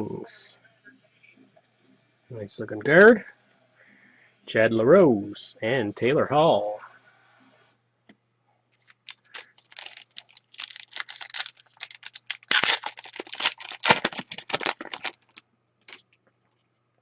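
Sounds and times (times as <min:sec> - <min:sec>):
wrapper tearing and crinkling: 0:08.8 - 0:16.0.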